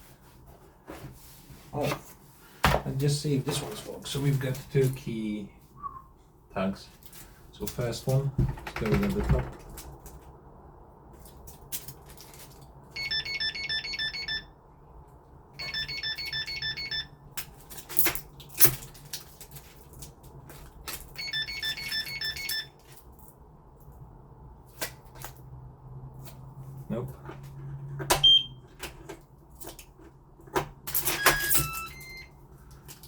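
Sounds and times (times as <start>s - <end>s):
smart lock rapid beeps: 13.0s - 14.5s, 15.6s - 17.1s, 21.2s - 22.7s, 28.2s - 28.6s, 31.1s - 32.3s.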